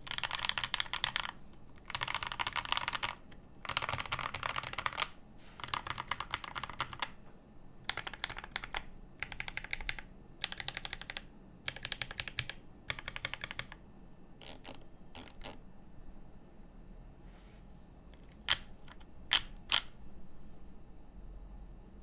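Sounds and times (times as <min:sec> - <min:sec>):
mechanical keyboard typing: 0:00.0 - 0:07.2, 0:07.9 - 0:13.8, 0:14.4 - 0:15.6, 0:18.2 - 0:19.9.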